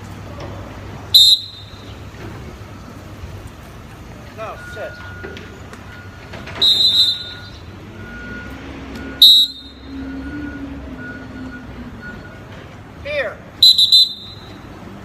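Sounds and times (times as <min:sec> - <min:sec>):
whistle blasts: 0:01.1 - 0:01.9, 0:05.9 - 0:08.3, 0:09.0 - 0:10.3, 0:13.6 - 0:14.7.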